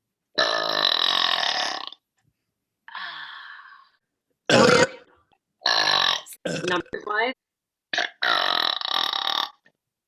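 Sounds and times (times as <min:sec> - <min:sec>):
woman burping: 0:04.5 - 0:07.0.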